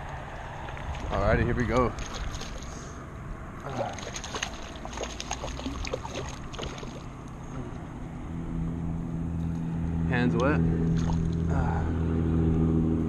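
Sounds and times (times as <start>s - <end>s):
water splashing and sloshing: 0.0s - 7.6s, 10.8s - 11.5s
low motor hum: 0.0s - 13.0s.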